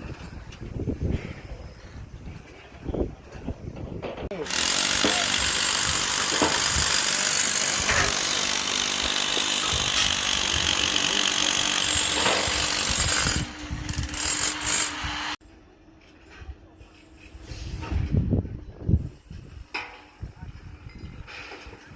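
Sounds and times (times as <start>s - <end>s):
power tool rasping: 4.4s - 15.4s.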